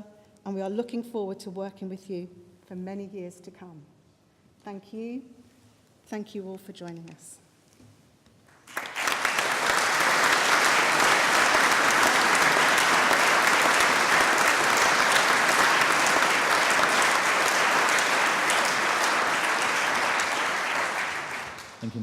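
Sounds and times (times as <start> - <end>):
audience applauding: 8.5 - 22.0.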